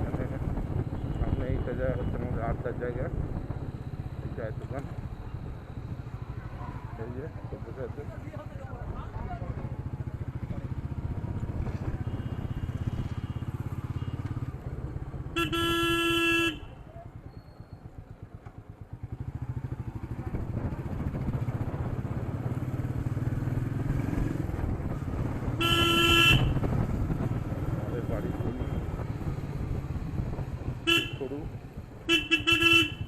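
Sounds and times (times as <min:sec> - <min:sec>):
motorcycle engine running: 0:03.1 - 0:33.0
horn honking: 0:15.3 - 0:16.7, 0:25.5 - 0:26.7, 0:30.7 - 0:31.3, 0:32.0 - 0:33.0.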